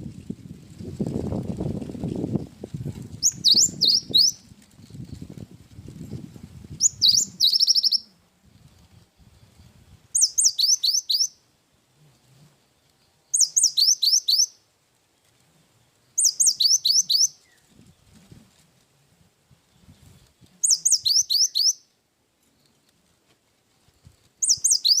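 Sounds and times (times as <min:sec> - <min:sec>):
bird singing whistled notes: 0:03.2 - 0:05.3, 0:06.8 - 0:08.1, 0:09.3 - 0:11.4, 0:13.3 - 0:14.6, 0:16.2 - 0:17.8, 0:20.6 - 0:22.0, 0:24.4 - 0:25.0.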